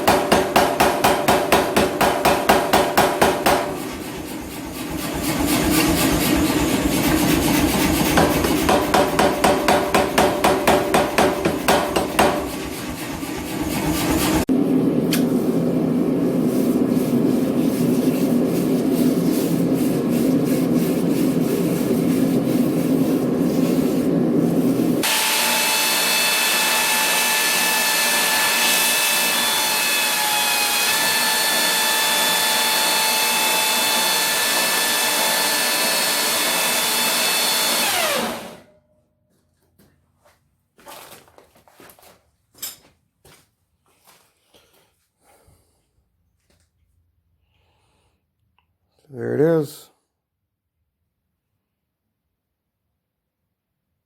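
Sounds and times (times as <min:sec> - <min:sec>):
power tool whining: 0:25.0 - 0:38.6.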